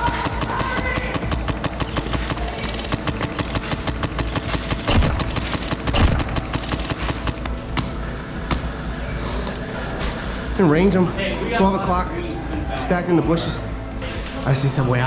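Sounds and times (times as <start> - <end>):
airsoft rifle firing rapidly: 0.0 - 7.5.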